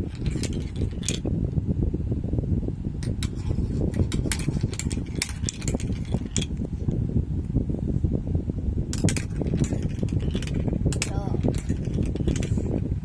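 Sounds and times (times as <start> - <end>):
marbles clicking and clacking: 0.0 - 1.3, 3.0 - 6.6, 9.0 - 12.8
marbles rolling on track: 0.0 - 1.3, 3.1 - 6.6, 9.0 - 12.9.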